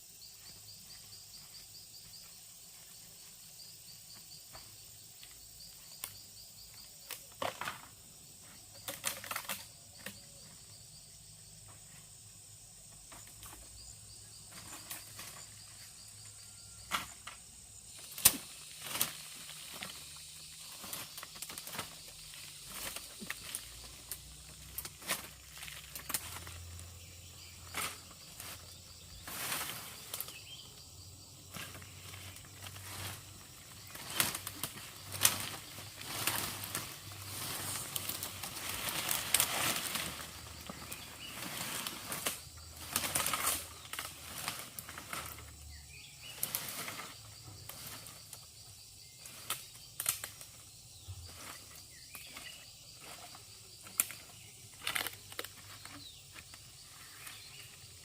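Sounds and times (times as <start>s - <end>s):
rustling and brushing: 12.9s - 16.0s, 16.8s - 30.6s, 31.4s - 48.5s, 49.2s - 58.0s.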